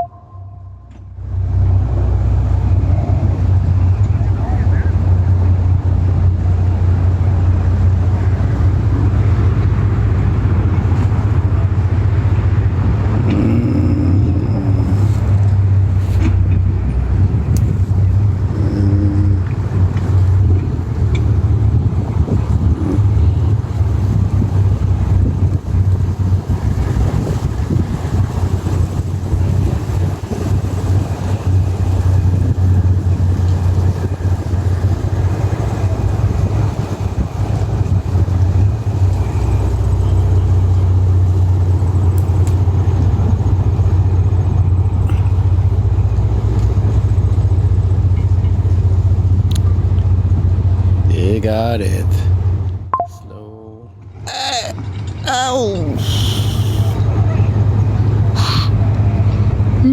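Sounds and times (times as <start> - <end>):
crane engine droning: 28.0 - 53.0.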